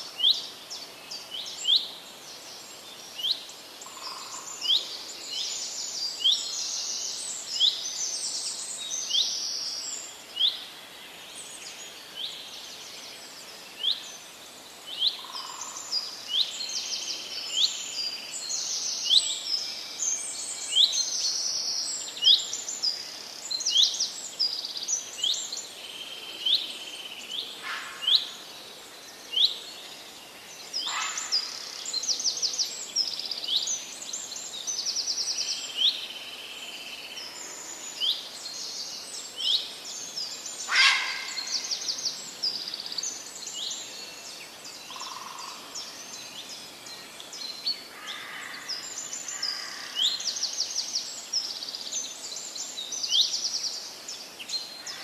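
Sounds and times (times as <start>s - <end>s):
light steady hiss: 0.0s - 55.0s
songbirds chirping and trilling: 0.0s - 55.0s
loud bird calls: 30.8s - 32.0s, 40.2s - 43.9s, 47.8s - 50.9s.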